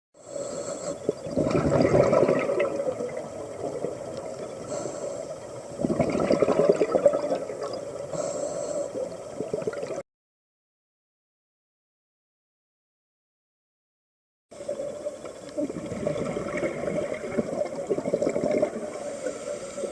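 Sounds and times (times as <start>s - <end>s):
regulator inhalation hiss: 0.2s - 1.3s, 4.5s - 5.8s, 8.0s - 9.4s, 18.7s - 19.9s
exhaled bubbles gushing: 0.9s - 4.7s, 5.5s - 8.1s, 9.0s - 10.0s, 14.6s - 19.2s.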